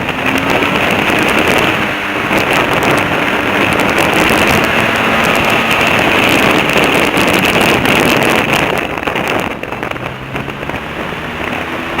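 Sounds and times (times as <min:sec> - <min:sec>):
airboat engine and propeller: 0:00.0 - 0:12.0
wind buffeting microphone: 0:00.0 - 0:12.0.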